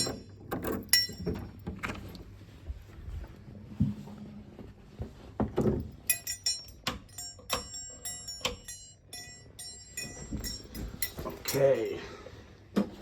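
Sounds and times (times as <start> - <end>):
keys jangling: 6.0 - 11.9.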